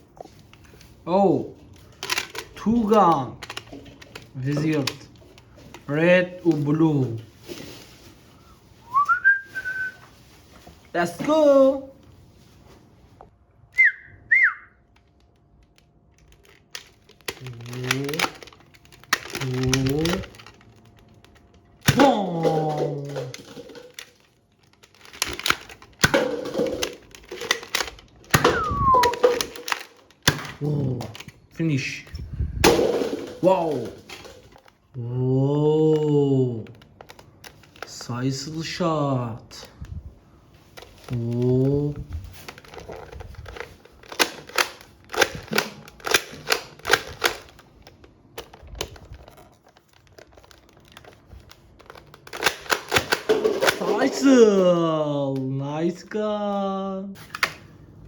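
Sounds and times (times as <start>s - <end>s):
plastic toy guns clicking: 1.8s - 5.9s, 14.9s - 31.4s, 42.4s - 49.0s, 50.2s - 54.3s
handling noise: 15.6s - 31.4s.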